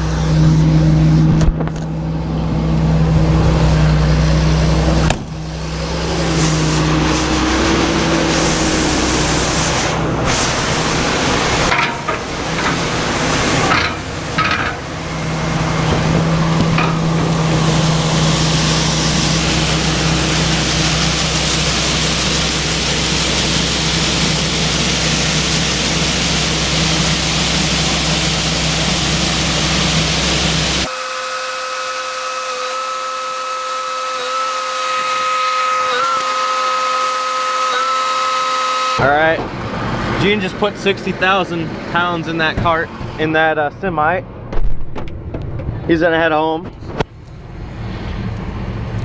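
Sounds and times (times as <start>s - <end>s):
engine hum with high whine: 0.0s - 49.0s
machinery rushing hiss: 5.4s - 31.0s.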